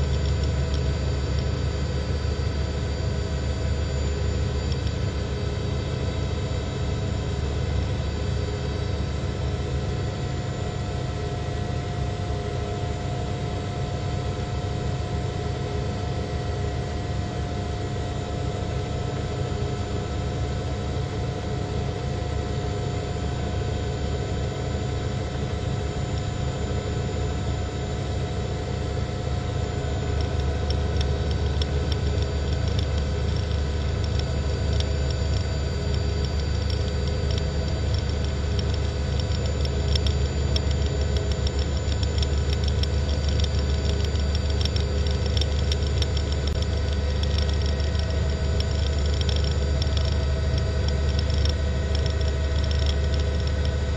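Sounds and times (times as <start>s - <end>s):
helicopter engine and rotor: 0.0s - 53.9s
faint rapid ticking: 30.2s - 53.8s.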